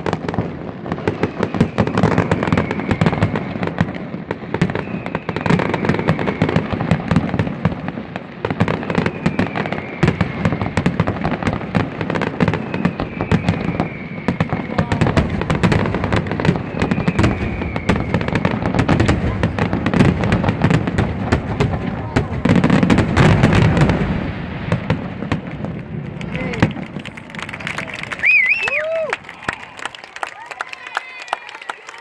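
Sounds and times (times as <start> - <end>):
fireworks bangs and crackling: 0.0 - 31.5
falling firework whistles: 0.1 - 7.7, 8.6 - 20.8, 28.1 - 29.8.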